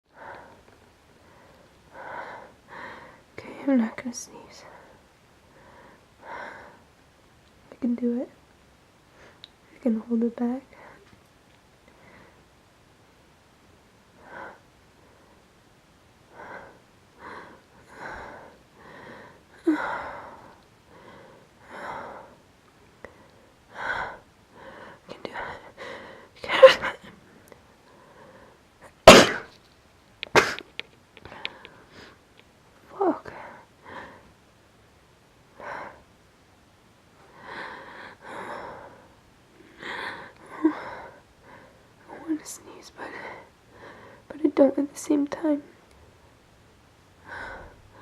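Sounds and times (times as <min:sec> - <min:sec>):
woman's hitching breaths: 0:47.2 - 0:48.0.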